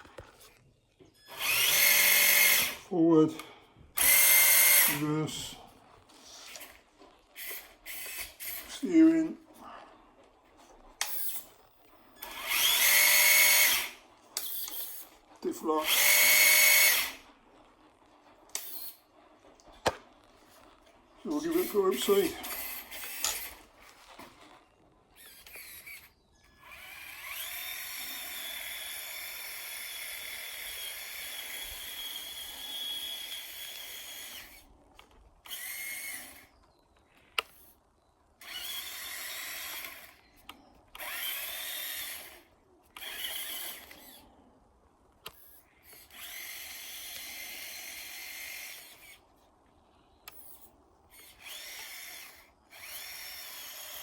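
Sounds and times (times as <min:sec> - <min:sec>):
electric motor whining: 0:01.1 - 0:05.7, 0:06.4 - 0:09.6, 0:10.9 - 0:19.1, 0:21.3 - 0:34.7, 0:35.4 - 0:36.6, 0:38.4 - 0:44.2, 0:45.3 - 0:49.2, 0:50.3 - 0:54.0.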